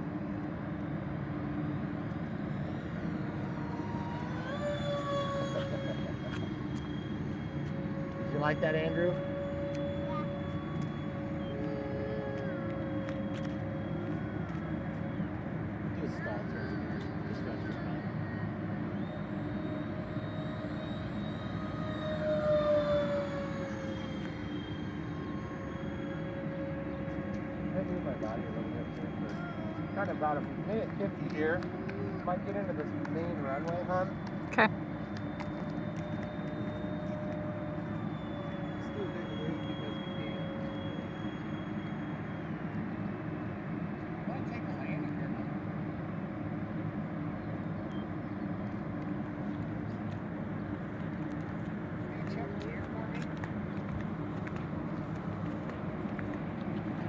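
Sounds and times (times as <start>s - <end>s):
model jet fans whining: 0.0s - 57.0s.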